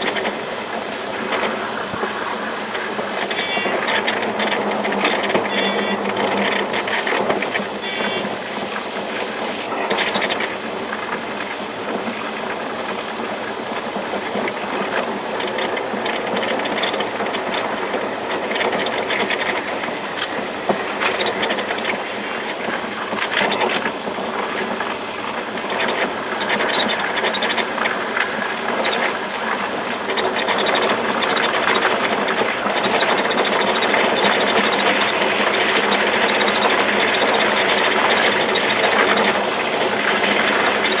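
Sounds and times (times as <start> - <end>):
train wheels rumbling on rails: 0.0 - 41.0.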